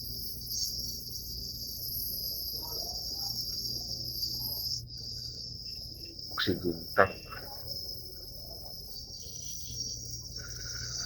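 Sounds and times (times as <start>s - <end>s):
oxygen hissing through tubing: 8.8s - 11.0s.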